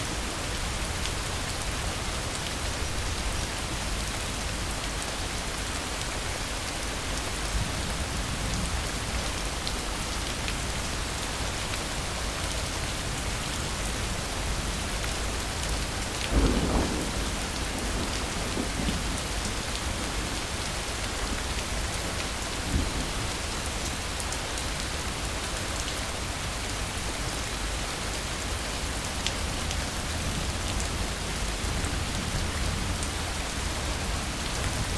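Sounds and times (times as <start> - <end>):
steady rain pouring: 0.0 - 34.9
thunder rumbling: 16.3 - 20.6.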